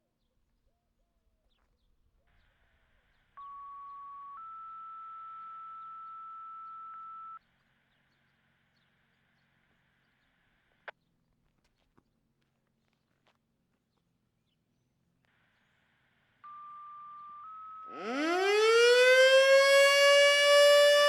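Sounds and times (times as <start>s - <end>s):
two-tone paging tones: 3.4s - 7.4s, 16.5s - 18.1s
radio channel hiss: 15.3s - 17.2s.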